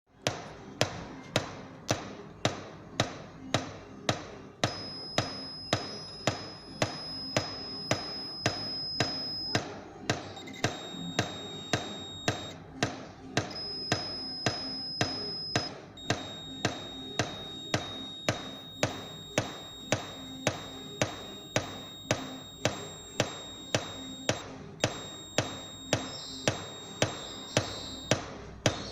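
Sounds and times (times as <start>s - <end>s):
faint high tones: 4.6s - 12.6s, 13.4s - 28.2s.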